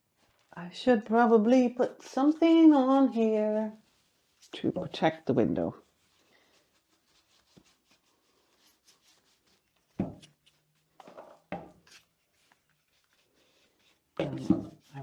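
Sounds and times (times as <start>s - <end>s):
objects knocking and clattering: 11.0s - 11.8s.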